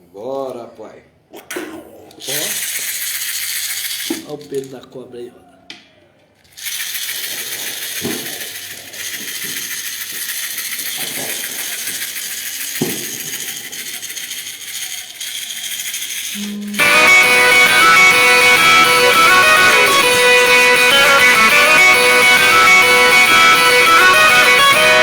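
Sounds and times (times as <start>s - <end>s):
hand rattle shaken: 2.2s - 4.8s, 6.4s - 25.0s
berimbau string instrument playing: 16.4s - 25.0s.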